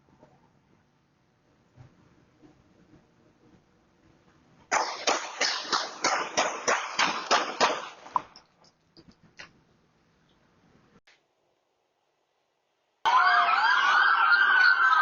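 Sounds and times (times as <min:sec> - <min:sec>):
loud bangs in rapid succession: 0:04.7 - 0:08.4.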